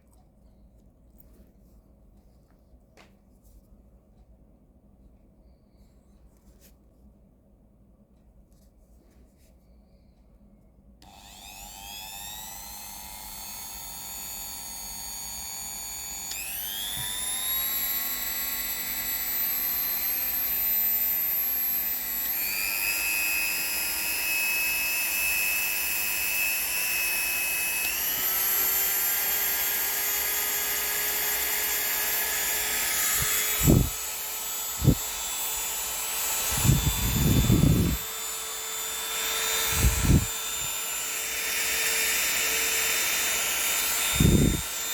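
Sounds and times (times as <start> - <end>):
rotary tool motor whine: 11.0 - 44.9.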